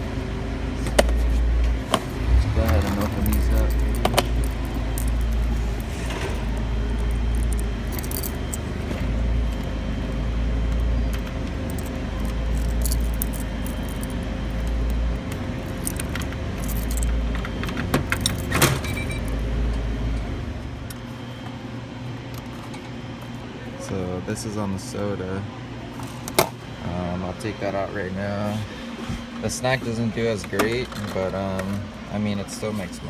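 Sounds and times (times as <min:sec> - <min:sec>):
low microphone rumble: 0:00.6 - 0:11.1
keys jangling: 0:02.7 - 0:09.0, 0:11.2 - 0:17.3, 0:18.1 - 0:19.4.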